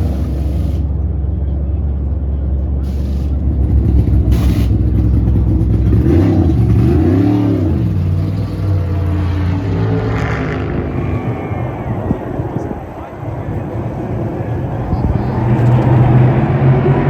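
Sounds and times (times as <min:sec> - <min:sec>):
race car engines at speed: 0:00.0 - 0:17.0
race car passing by: 0:05.9 - 0:17.0.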